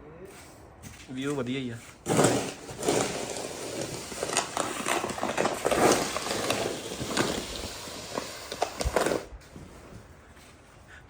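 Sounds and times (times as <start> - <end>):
shovel scraping snow: 1.7 - 10.6.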